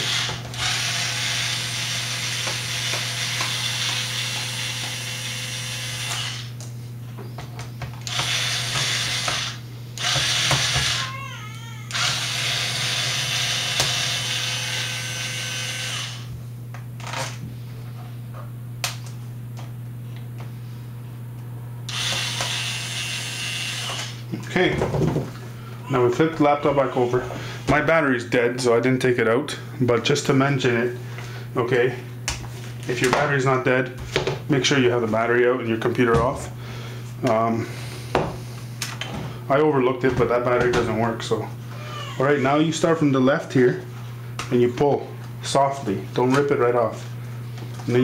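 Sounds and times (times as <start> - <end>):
cordless drill running: 0.0 - 6.6, 8.0 - 11.2, 11.9 - 16.3, 21.9 - 24.2
steady low hum: 0.0 - 48.0.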